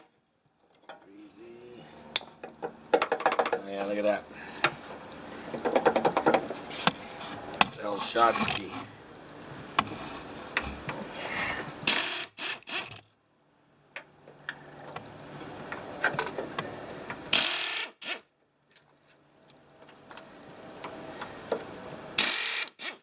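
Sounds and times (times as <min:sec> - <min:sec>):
metallic clicks of hand tools: 0:02.2 - 0:03.6
short noisy bursts: 0:11.8 - 0:12.9.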